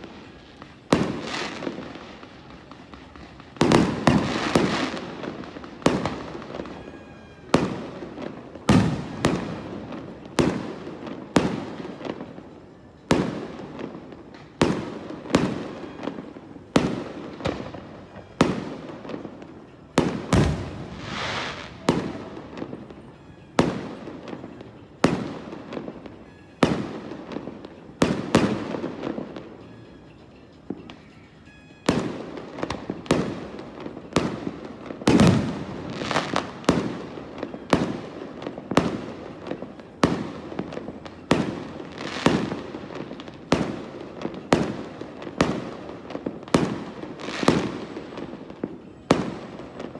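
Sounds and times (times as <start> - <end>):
fireworks bursting with echo: 0.0 - 49.9
fireworks hissing burst: 20.3 - 21.9.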